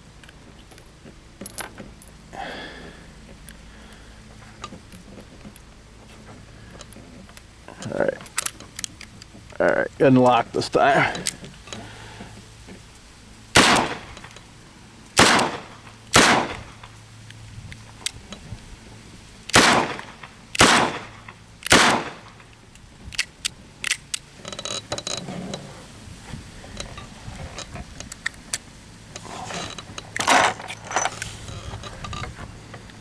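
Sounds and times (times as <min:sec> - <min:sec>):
metallic rattle: 0:29.1 - 0:32.4.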